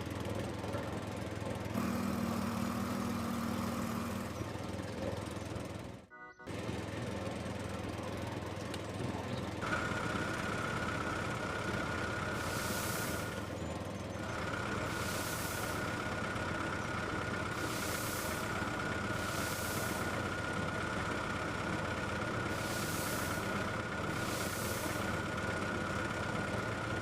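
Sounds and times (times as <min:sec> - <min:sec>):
small motor whining: 0:01.4 - 0:05.8, 0:08.0 - 0:27.0
short hissing bursts: 0:12.3 - 0:13.4, 0:14.8 - 0:16.0, 0:17.5 - 0:20.3, 0:22.4 - 0:25.4.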